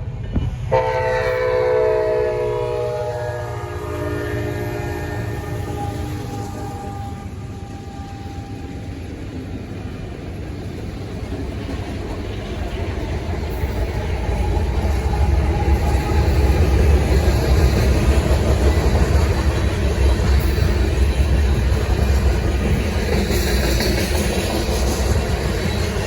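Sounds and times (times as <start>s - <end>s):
train rumbling past: 0.0s - 26.0s
locomotive horn: 0.7s - 8.8s.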